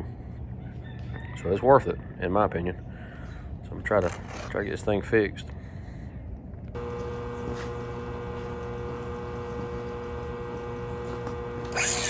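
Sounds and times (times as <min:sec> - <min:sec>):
arc welder humming: 0:06.7 - 0:12.0
cooling fan running: 0:06.7 - 0:12.0
loud hissy noise: 0:06.8 - 0:12.0.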